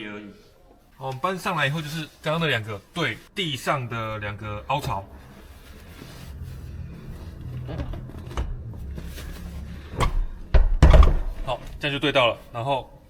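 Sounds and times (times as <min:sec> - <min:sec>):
seat scraping on floor: 0:04.7 - 0:11.9
seat thud: 0:07.4 - 0:11.8.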